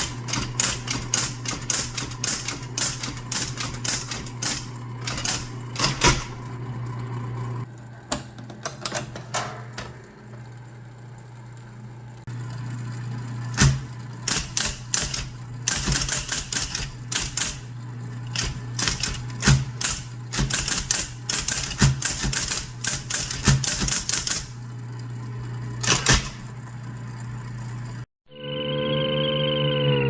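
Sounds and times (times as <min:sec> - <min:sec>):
typewriter key strikes: 0:00.0 - 0:06.4, 0:13.6 - 0:17.7, 0:18.4 - 0:24.6, 0:25.8 - 0:26.5
electric typewriter motor hum: 0:00.0 - 0:10.7, 0:11.5 - 0:28.0.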